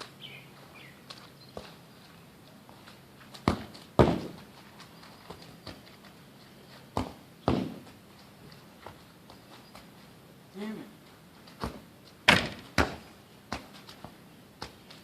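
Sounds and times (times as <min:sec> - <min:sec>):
sharp knocks: 0:07.0 - 0:07.9, 0:12.3 - 0:13.0.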